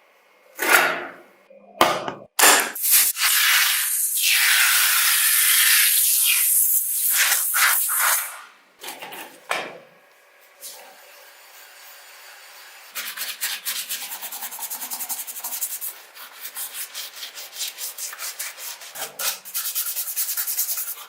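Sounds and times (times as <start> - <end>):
rapid rubbing strokes on surface: 12.9 - 21.0.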